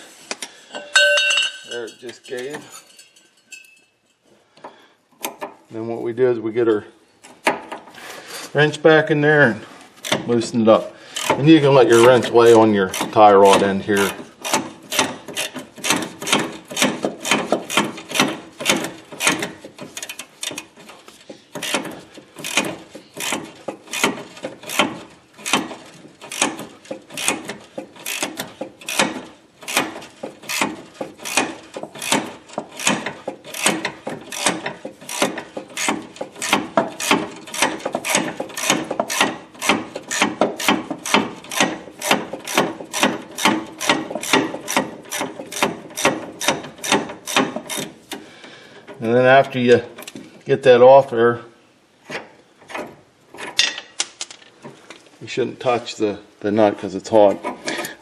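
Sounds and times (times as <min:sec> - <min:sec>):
ratcheting wrench clicking: 0:11.2 - 0:11.4, 0:14.0 - 0:48.2.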